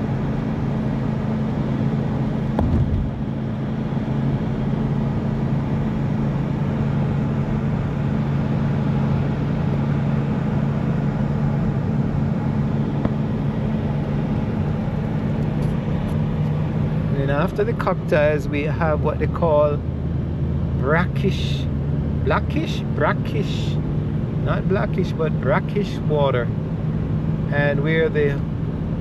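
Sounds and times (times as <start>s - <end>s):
car engine and tyre noise: 0.0s - 29.0s
thump: 2.6s - 3.1s.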